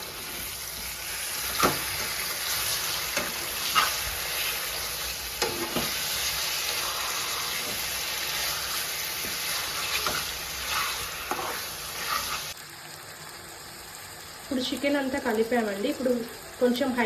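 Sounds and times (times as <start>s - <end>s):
chicken sizzling in hot oil: 0.0s - 17.0s
utensil scraping a pan: 1.3s - 12.6s.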